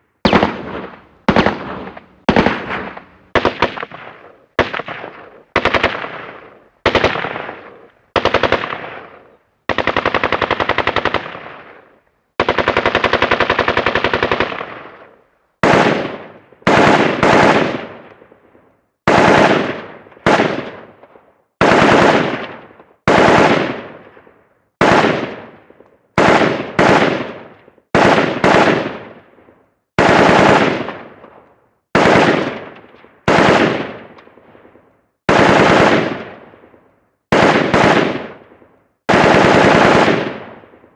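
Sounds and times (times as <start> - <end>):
automatic gunfire bursts: 0.2 - 14.9, 15.6 - 17.8, 19.1 - 20.8, 21.6 - 23.8, 24.8 - 25.4, 26.2 - 29.0, 30.0 - 31.0, 31.9 - 34.0, 35.3 - 36.4, 37.3 - 38.4, 39.1 - 40.6
gunshots: 0.2 - 18.2, 19.1 - 40.9.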